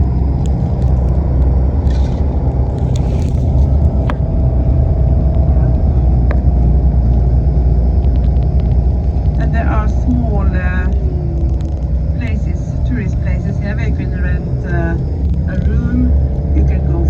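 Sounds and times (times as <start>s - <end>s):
bus engine and tyres rumbling: 0.0s - 17.0s.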